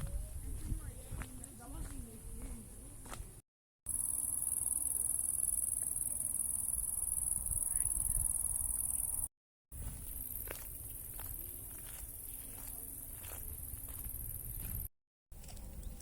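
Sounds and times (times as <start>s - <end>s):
insects chirring: 3.9s - 14.9s.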